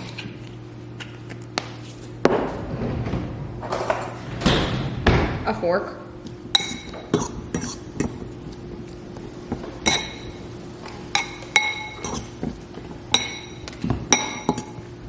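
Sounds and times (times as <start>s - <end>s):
metal fork clinking on glass dish: 6.6s - 7.0s, 9.9s - 10.4s, 11.1s - 12.3s, 13.1s - 14.8s.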